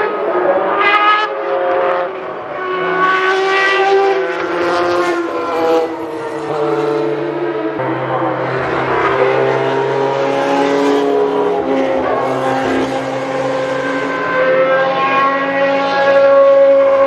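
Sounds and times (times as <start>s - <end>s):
racing engine at high revs: 9.2s - 16.8s.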